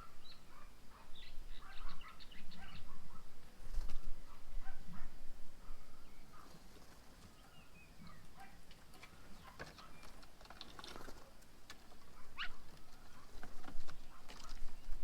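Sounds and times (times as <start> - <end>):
birds chirping: 0.0 - 3.0, 7.2 - 10.3.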